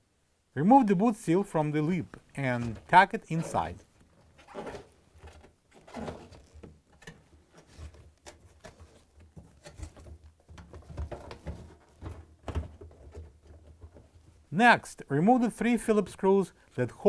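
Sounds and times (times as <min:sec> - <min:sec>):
rubber seal rubbing: 0:02.4 - 0:06.6.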